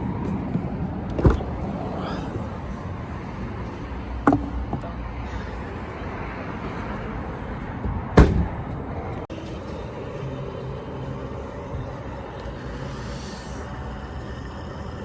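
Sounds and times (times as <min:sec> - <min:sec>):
vehicle noise: 0:00.0 - 0:15.0
sharp bangs: 0:07.8 - 0:09.0.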